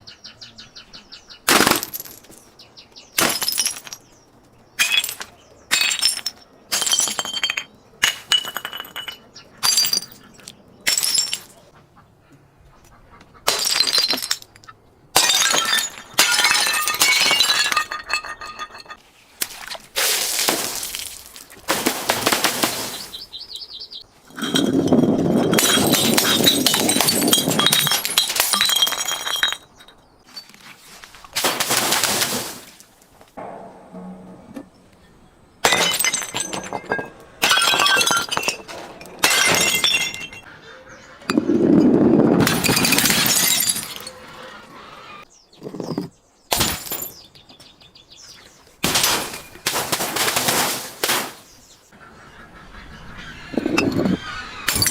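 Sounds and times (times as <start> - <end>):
glass bottles smashing: 1.5 - 2.4, 3.2 - 4.1, 4.8 - 11.6, 13.5 - 19.0, 20.0 - 23.3, 24.3 - 30.5, 31.4 - 32.7, 35.6 - 40.5, 41.8 - 44.1, 46.5 - 47.2, 48.8 - 51.5, 54.7 - 54.9
glass shards crunching and tinkling: 24.3 - 30.7.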